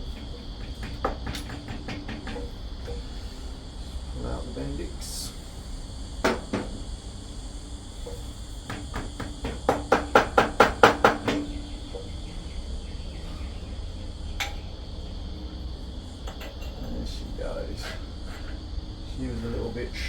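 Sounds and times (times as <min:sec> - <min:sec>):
knocks: 0:00.1 - 0:03.0, 0:06.2 - 0:06.8, 0:08.1 - 0:12.1
sharp metal taps: 0:00.1 - 0:03.0.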